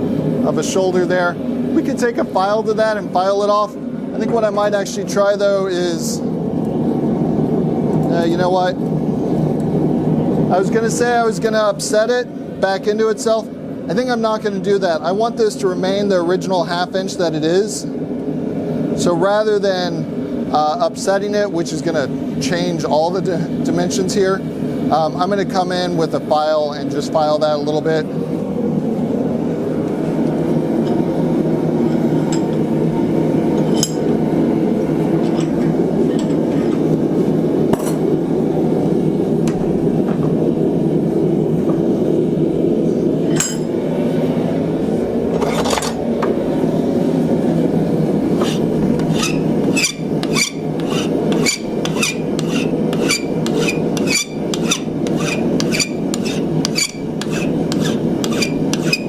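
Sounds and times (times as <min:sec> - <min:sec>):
steady forge roar: 0:00.0 - 0:59.0
file rasping on steel bar: 0:48.4 - 0:59.0.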